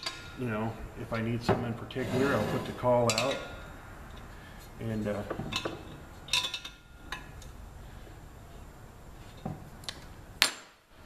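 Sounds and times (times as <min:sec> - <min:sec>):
wrench clinking on metal: 0:05.4 - 0:07.5.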